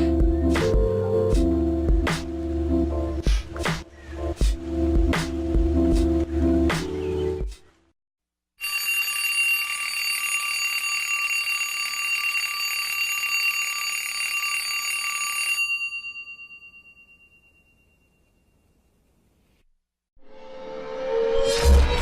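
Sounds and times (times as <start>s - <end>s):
alarm clock bell ringing: 8.6s - 18.5s.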